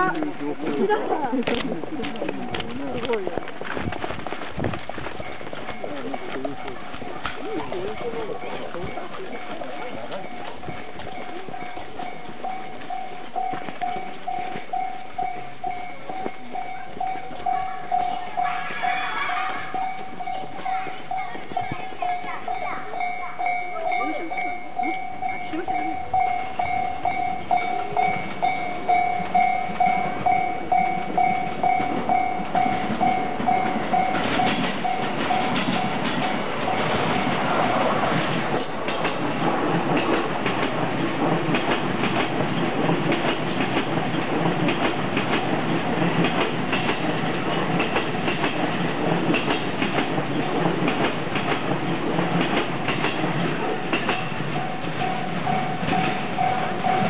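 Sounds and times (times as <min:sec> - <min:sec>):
level-crossing warning bell ringing: 0:00.0 - 0:03.2, 0:05.2 - 0:37.9, 0:52.8 - 0:57.0
train wheels clattering over rails: 0:00.0 - 0:57.0.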